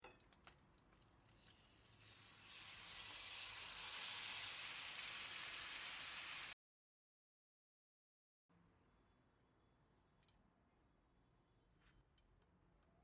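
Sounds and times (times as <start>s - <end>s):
food sizzling in a hot pan: 1.4s - 6.6s.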